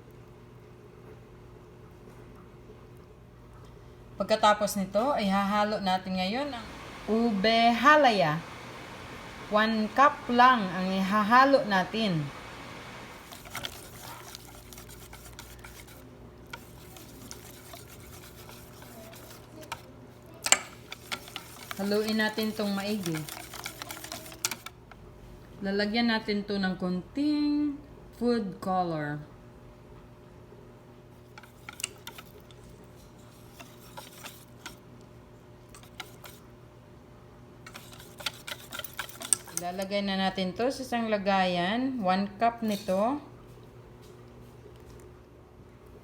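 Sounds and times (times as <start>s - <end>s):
steady low hum: 0.0s - 46.0s
utensil scraping batter in bowl: 13.1s - 24.8s, 31.2s - 34.8s, 35.7s - 36.5s, 37.7s - 40.0s
utensil clicking against bowl: 13.2s - 24.8s, 37.7s - 39.9s.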